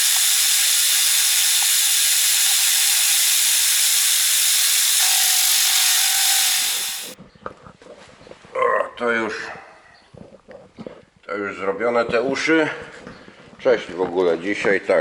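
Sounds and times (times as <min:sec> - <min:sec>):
angle grinder grinding steel: 0:00.0 - 0:07.2.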